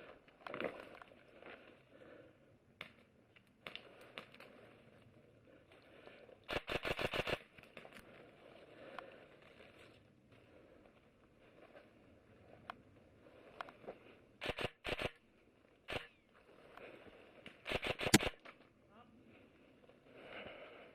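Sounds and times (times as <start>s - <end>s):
airsoft rifle full-auto burst: 6.5s - 7.4s, 14.4s - 15.2s, 17.7s - 18.4s.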